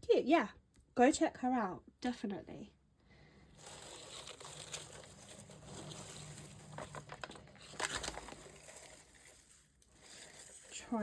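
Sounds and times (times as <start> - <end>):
paper packaging rustling: 3.5 - 11.0
sharp paper crackles: 3.6 - 11.0.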